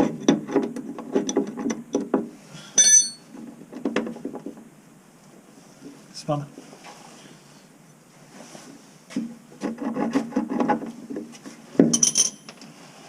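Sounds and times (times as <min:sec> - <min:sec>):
sharp metallic clink: 0:02.8 - 0:03.3.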